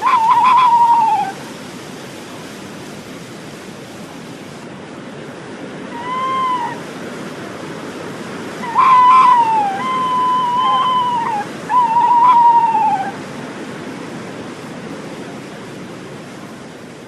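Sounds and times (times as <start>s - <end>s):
owls calling: 0.0s - 1.4s, 5.9s - 6.8s, 8.6s - 13.2s.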